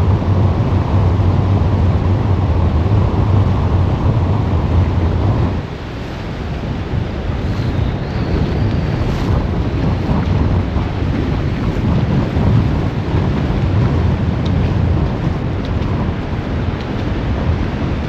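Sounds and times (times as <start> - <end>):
wind buffeting microphone: 0.0 - 18.0
surf breaking: 3.3 - 18.0.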